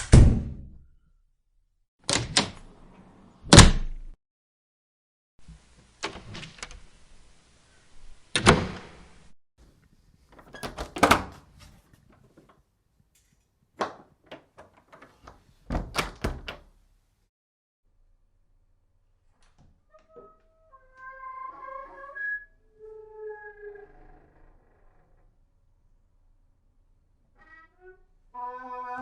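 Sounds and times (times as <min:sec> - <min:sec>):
door closing thud: 0:15.7 - 0:16.6.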